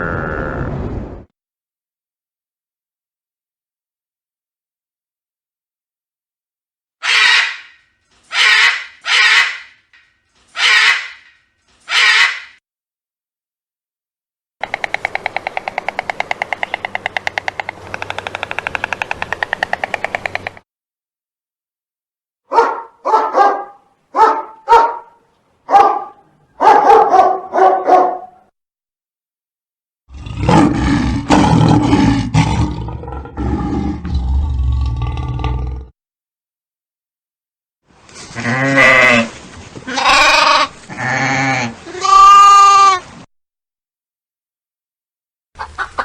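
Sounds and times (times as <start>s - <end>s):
dog barking: 22.5s - 28.4s.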